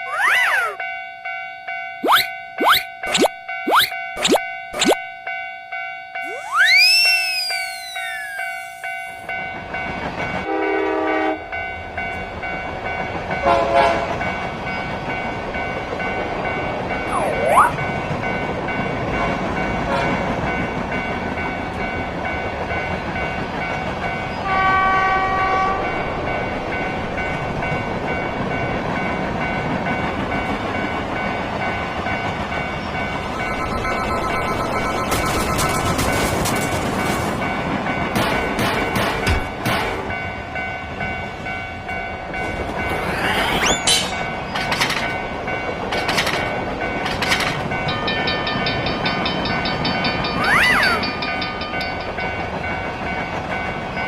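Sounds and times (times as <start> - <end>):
train rumbling: 1.6 - 54.0
swooping tone: 2.0 - 5.0, 6.2 - 9.3, 17.1 - 18.0
train horn blasts: 10.4 - 11.5, 13.4 - 14.2, 19.2 - 20.3, 24.4 - 26.0
steady ringing tones: 29.6 - 38.1, 47.6 - 54.0.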